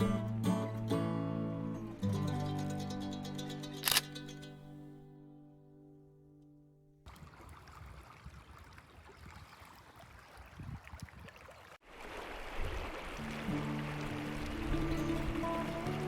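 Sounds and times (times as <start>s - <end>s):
music: 0.0s - 6.8s, 13.2s - 16.0s
river water rushing: 11.8s - 16.0s.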